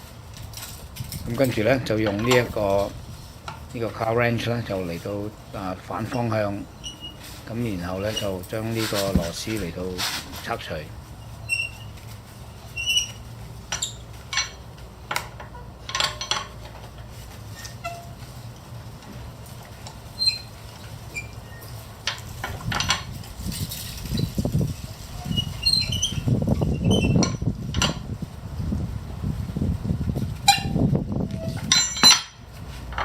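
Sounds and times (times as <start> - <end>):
lug wrench clinking on lug nuts: 13.7 - 16.8, 31.4 - 33.0.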